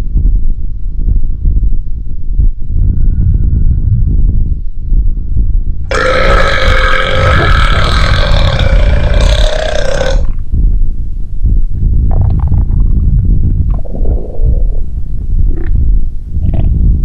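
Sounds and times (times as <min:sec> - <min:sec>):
loud low rumble: 0:00.0 - 0:17.0
long burp: 0:05.9 - 0:10.4.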